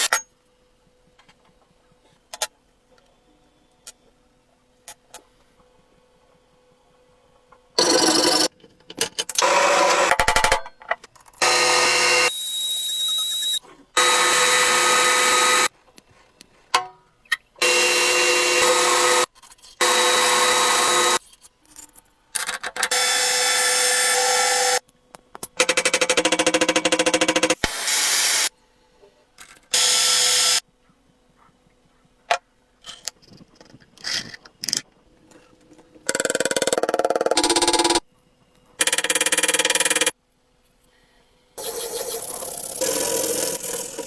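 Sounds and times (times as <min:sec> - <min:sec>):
power tool motor whine: 0:11.4 - 0:15.7, 0:17.6 - 0:21.2.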